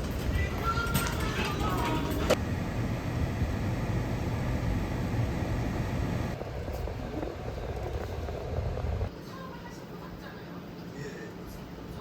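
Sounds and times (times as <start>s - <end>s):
moving vehicle rumble: 0.0s - 9.1s.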